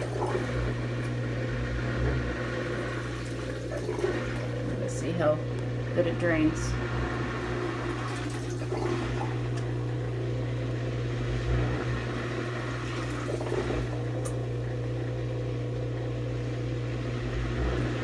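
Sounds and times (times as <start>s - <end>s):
water rushing through hose: 0.0s - 5.0s, 7.3s - 10.1s, 12.1s - 14.7s
drain pump humming: 0.0s - 18.0s.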